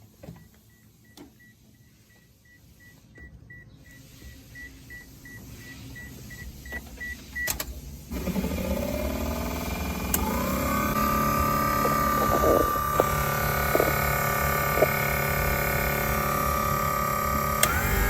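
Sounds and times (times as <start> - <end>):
mechanical running with rising whine: 8.1 - 18.0
vehicle warning buzzer beeping: 10.0 - 18.0.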